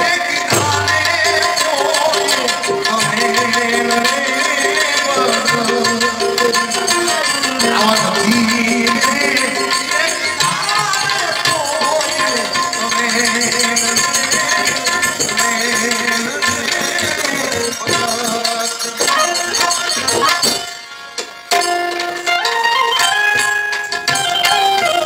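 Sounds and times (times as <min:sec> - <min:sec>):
folk-style singing: 0:00.0 - 0:20.6
tabla: 0:00.0 - 0:25.0.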